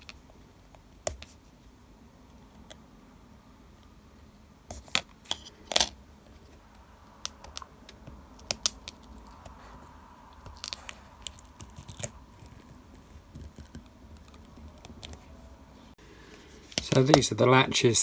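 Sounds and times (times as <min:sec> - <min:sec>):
sticky tape being peeled: 0:10.4 - 0:15.3.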